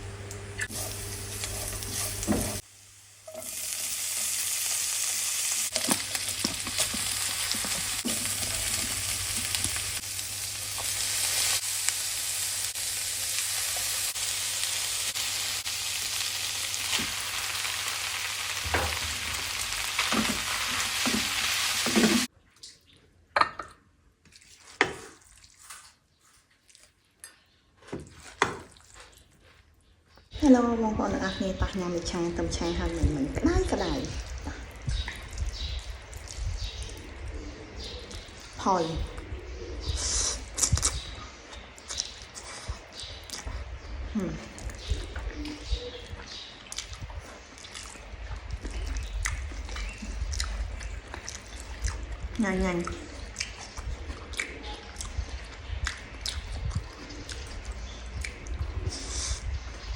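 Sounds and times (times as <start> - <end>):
noodles sizzling in a pan: 0.0 - 22.3.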